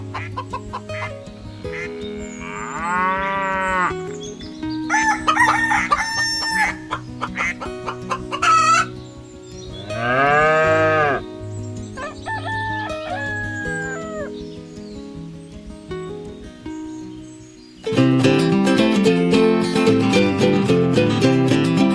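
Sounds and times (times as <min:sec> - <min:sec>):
chicken clucks and squawks: 0:00.0 - 0:01.9, 0:04.9 - 0:08.9
rooster crowing: 0:04.9 - 0:06.9, 0:12.0 - 0:14.3.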